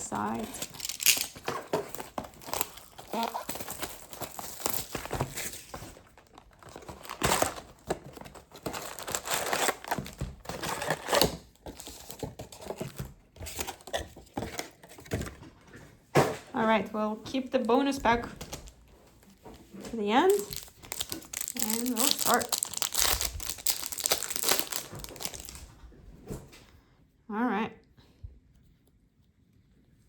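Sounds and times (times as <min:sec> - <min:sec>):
plastic wrapping crinkling and tearing: 0:00.0 - 0:15.2, 0:20.1 - 0:25.7.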